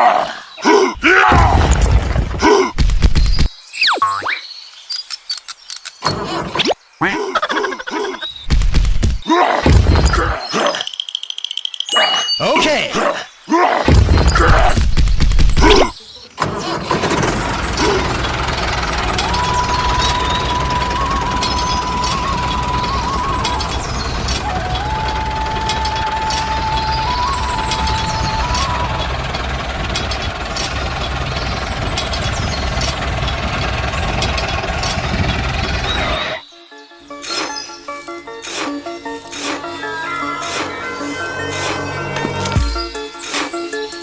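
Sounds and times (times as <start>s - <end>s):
small motor running: 16.4s - 36.4s
high whine: 18.6s - 36.4s.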